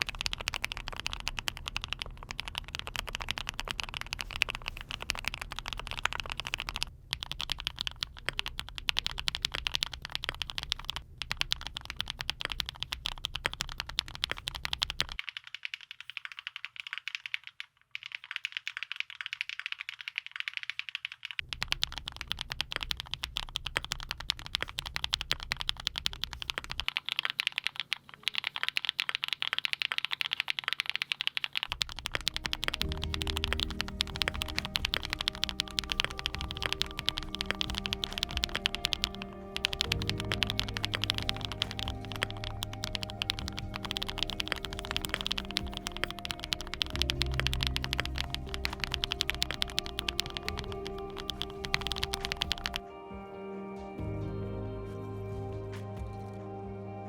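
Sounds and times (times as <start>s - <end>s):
mechanical keyboard typing: 0.0s - 52.8s
low background rumble: 31.7s - 52.7s.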